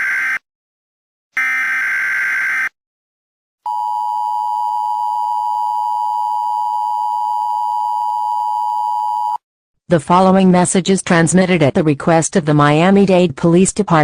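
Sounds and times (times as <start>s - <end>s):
harsh digital data bursts: 1.4s - 2.7s
loud steady alert tone: 1.4s - 2.7s.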